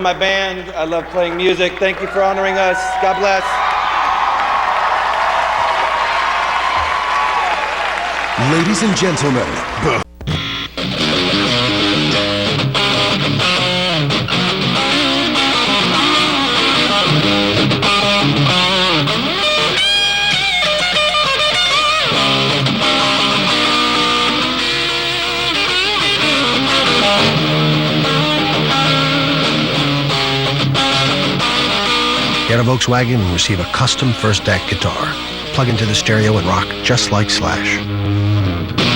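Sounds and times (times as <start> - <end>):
bass: 8.2 - 38.9
distorted electric guitar strumming: 10.1 - 38.9
high guitar notes sliding upward: 10.4 - 38.9.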